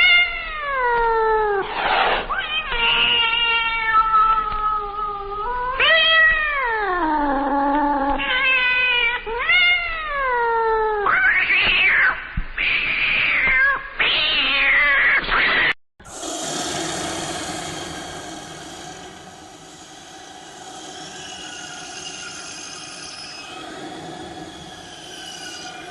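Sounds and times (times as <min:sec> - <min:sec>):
noisy sound: 0:16.0 - 0:25.9.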